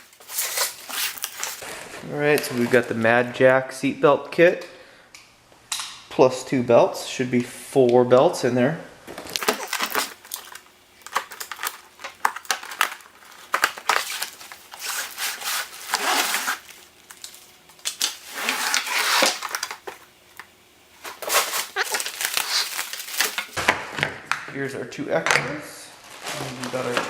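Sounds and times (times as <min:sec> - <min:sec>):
plastic packaging crinkling: 0:00.0 - 0:01.6, 0:09.3 - 0:23.6.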